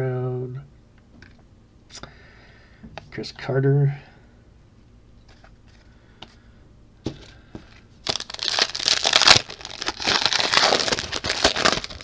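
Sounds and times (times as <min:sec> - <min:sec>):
card pack wrapper tearing: 0:08.0 - 0:12.0.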